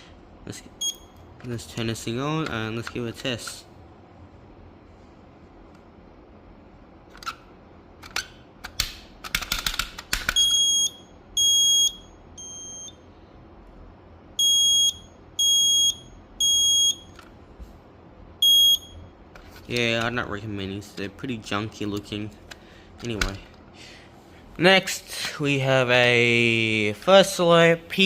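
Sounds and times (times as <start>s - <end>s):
smoke alarm beeps: 0.8s - 1.2s, 10.4s - 13.1s, 14.4s - 17.2s, 18.4s - 19.1s.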